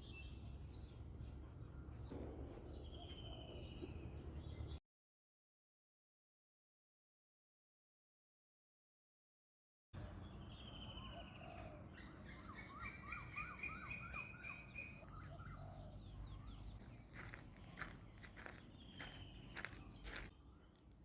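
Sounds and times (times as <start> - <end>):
bird chirps: 0.0 - 4.8, 10.0 - 20.9
bird trill: 1.7 - 4.8, 10.0 - 20.8.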